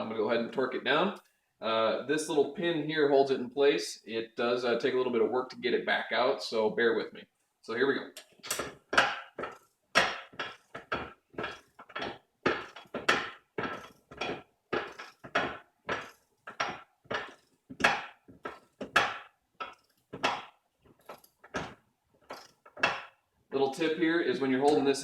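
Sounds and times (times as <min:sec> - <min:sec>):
sharp metal clicks and clacks: 0:08.2 - 0:23.2.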